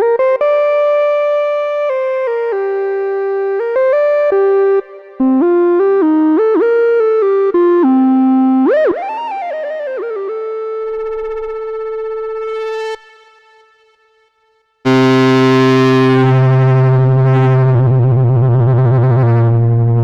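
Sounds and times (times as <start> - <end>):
synthesizer lead line: 14.9 - 17.3.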